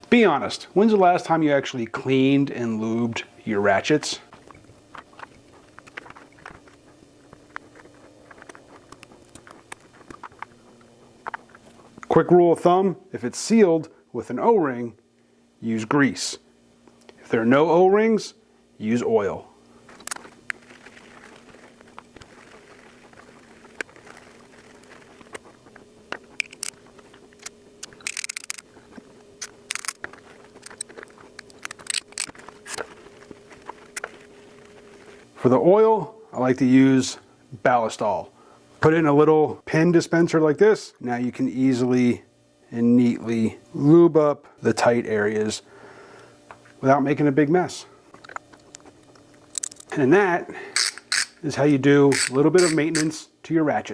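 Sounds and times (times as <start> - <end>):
faint steady hum: 0.0 - 53.9
metallic clicks and scrapes: 26.3 - 26.8, 27.4 - 28.7, 29.4 - 32.9, 48.2 - 50.0, 50.8 - 51.4, 52.1 - 53.2
ratchet wrench clicks and taps: 50.8 - 51.4, 52.1 - 53.1.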